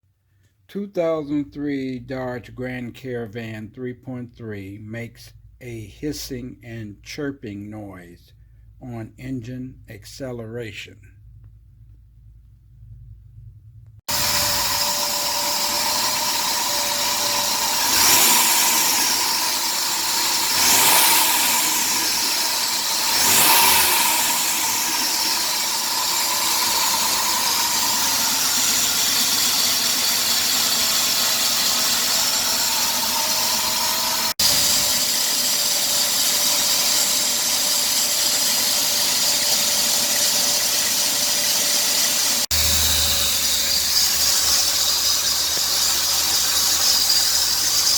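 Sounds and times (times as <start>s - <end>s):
car engine revving with whine: 14.1s - 47.9s.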